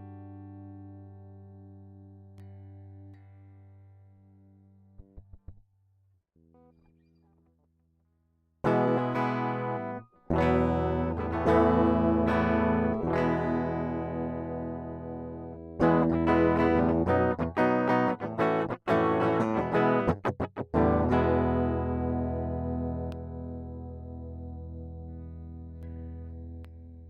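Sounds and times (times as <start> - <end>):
choppy electric guitar strums: 8.7 - 26.4
electric guitar strummed chords: 8.7 - 26.9.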